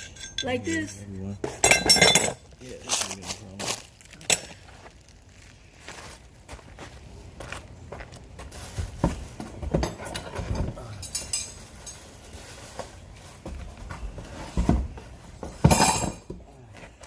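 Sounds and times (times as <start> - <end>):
metal parts clattering: 0.0 - 1.0, 1.6 - 4.6
metal parts clinking: 0.0 - 1.0, 1.6 - 4.6.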